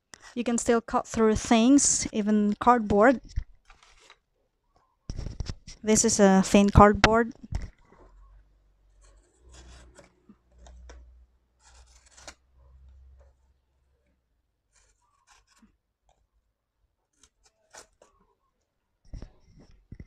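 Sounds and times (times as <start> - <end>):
knife cutting thin cardboard: 8.9 - 11.0, 11.6 - 12.9, 14.7 - 15.8, 17.1 - 18.3.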